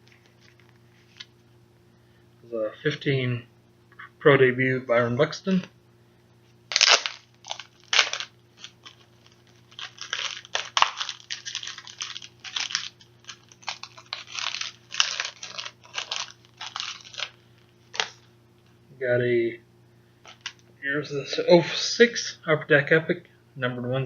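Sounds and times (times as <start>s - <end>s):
plastic packaging crinkling: 6.7s - 18.3s, 20.2s - 20.6s.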